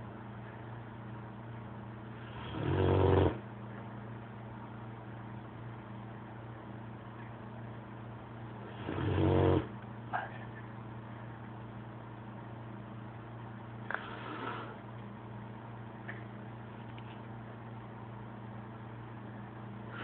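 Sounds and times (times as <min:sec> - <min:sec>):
dog snoring: 0:02.2 - 0:03.4, 0:08.6 - 0:09.7, 0:13.9 - 0:14.8.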